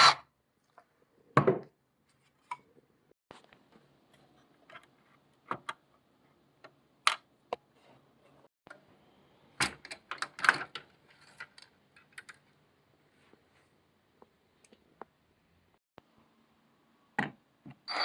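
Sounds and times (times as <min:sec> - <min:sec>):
clicks and knocks of parts: 0:09.6 - 0:12.5.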